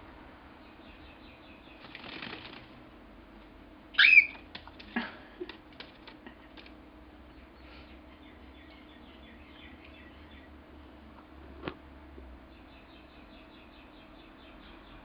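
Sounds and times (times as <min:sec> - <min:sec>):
cockatiel shrill call: 0:04.0 - 0:04.4.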